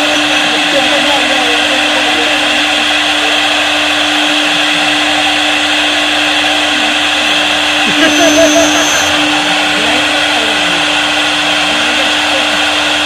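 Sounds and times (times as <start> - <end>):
wood router cutting wood: 0.0 - 13.0.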